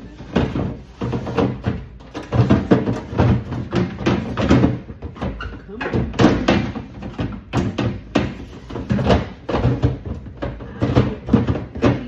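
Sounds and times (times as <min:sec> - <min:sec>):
things clattering in refrigerator: 0:00.0 - 0:12.0.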